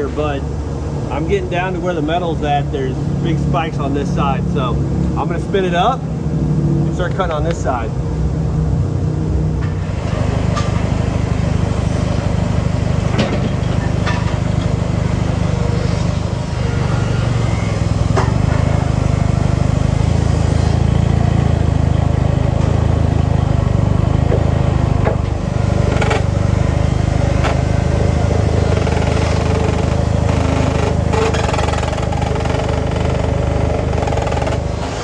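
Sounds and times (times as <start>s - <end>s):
sawmill engine running: 24.0s - 35.0s
sharp knocks and clanks: 24.3s - 26.4s, 27.4s - 27.8s, 28.4s - 35.0s.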